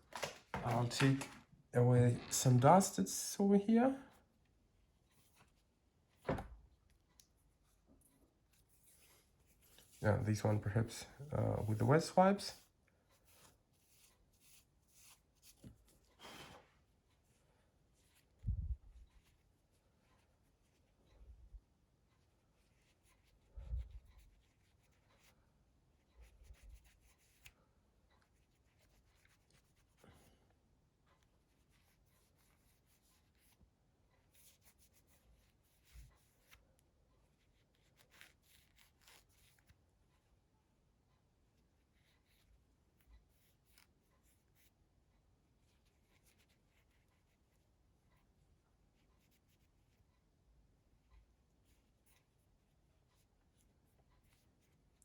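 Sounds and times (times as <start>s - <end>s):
soft thump on bench: 6.2s - 6.6s
wet wipe rubbing phone parts: 8.6s - 12.4s.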